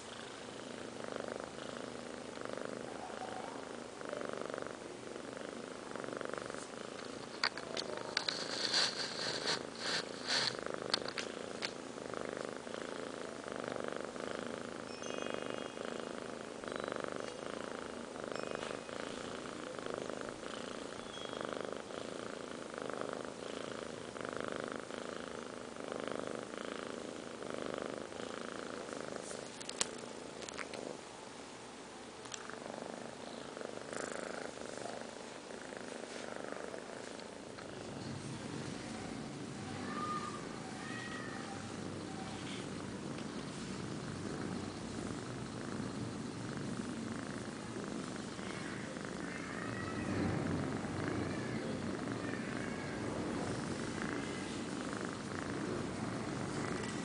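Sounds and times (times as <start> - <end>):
kittens snoring softly: 0.0 - 57.0
rustling: 6.4 - 12.6, 33.9 - 39.0, 39.7 - 44.0.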